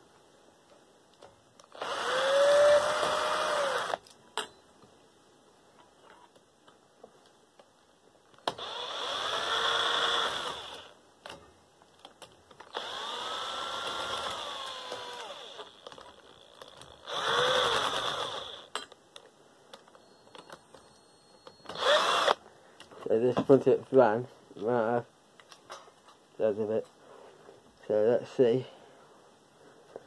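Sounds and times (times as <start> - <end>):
power drill spinning: 1.7 - 4.0, 8.4 - 11.0, 12.7 - 18.7, 21.7 - 22.4.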